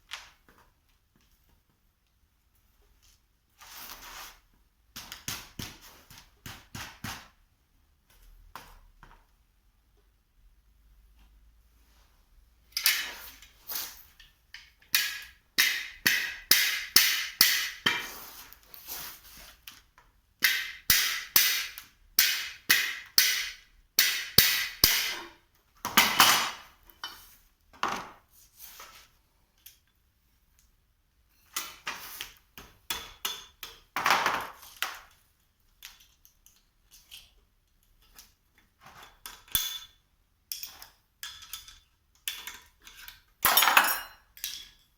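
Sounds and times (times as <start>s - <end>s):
hammer striking metal: 15.0s - 18.0s, 20.4s - 25.3s.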